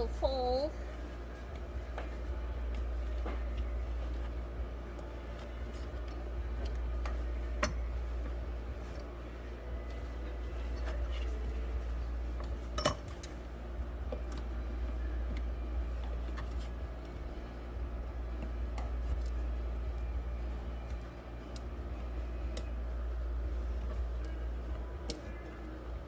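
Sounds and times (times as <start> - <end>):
steady low hum: 0.0 - 26.0
metallic clinks of tools handled: 12.8 - 13.3.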